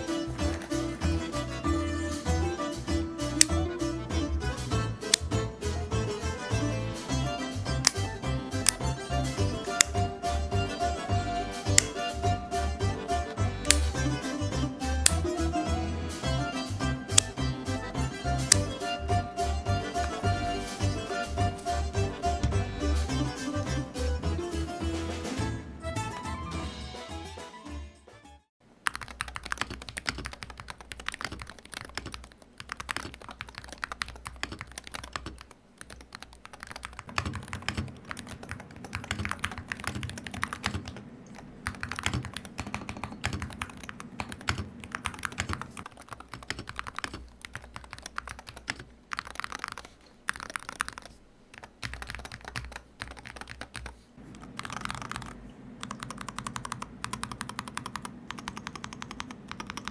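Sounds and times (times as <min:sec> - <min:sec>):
keyboard key clacks: 0:11.7 - 0:12.2, 0:17.0 - 0:17.4.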